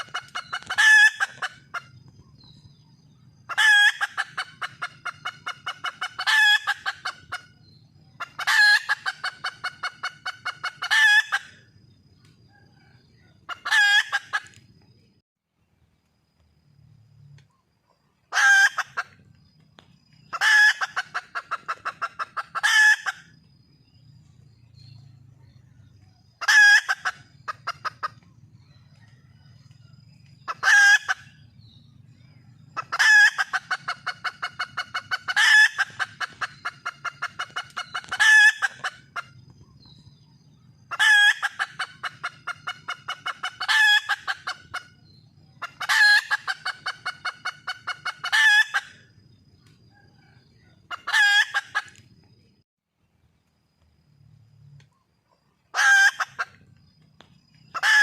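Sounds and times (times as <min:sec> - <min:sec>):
hen cackling calls: 0:00.0 - 0:11.7, 0:12.8 - 0:14.6, 0:18.3 - 0:19.3, 0:20.2 - 0:23.4, 0:25.9 - 0:28.3, 0:30.4 - 0:31.5, 0:32.6 - 0:39.4, 0:40.7 - 0:49.2, 0:49.9 - 0:52.0, 0:55.7 - 0:56.7, 0:57.6 - 0:58.0.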